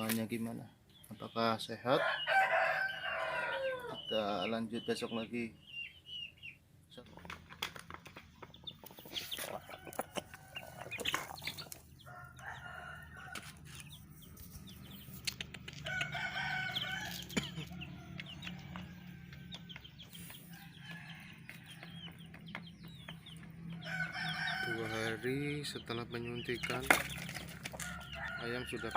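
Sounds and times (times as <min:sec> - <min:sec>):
chickens clucking: 0:00.0 - 0:28.9
rooster crowing: 0:01.9 - 0:04.0, 0:12.0 - 0:13.6, 0:15.8 - 0:19.7, 0:23.7 - 0:25.2, 0:27.8 - 0:28.9.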